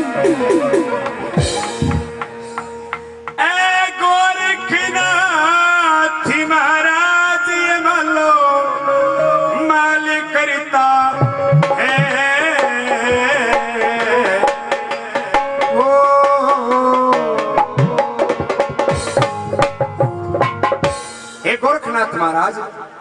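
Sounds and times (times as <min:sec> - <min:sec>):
drumming: 0:00.0 - 0:03.6, 0:11.2 - 0:22.2
devotional instrumental melody: 0:00.0 - 0:23.0.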